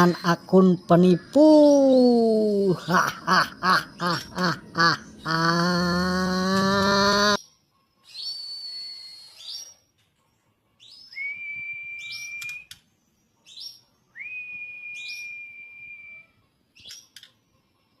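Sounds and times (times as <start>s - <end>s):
bird singing whistles: 8.0s - 9.9s, 10.8s - 12.8s, 13.4s - 17.1s
sharp clicks: 12.3s - 12.9s.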